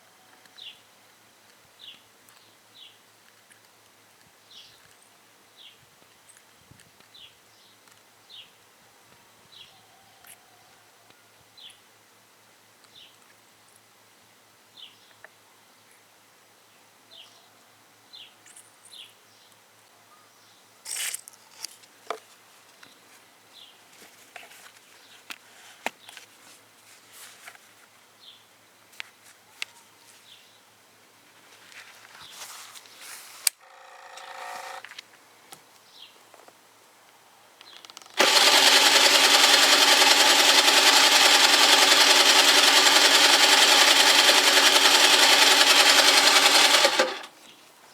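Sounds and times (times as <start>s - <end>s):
scooter engine buzzing: 33.6s - 34.8s, 38.2s - 47.4s.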